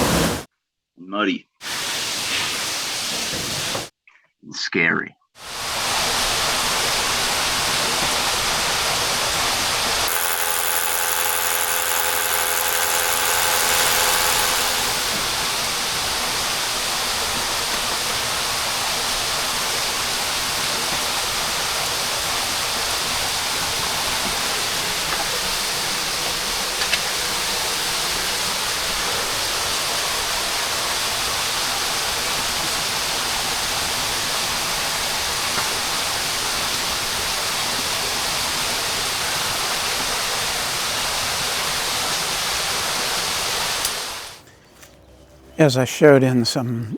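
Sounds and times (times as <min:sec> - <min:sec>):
falling water in cave: 0:05.4 - 0:11.6, 0:14.9 - 0:44.4
faint steady whine: 0:10.1 - 0:25.3.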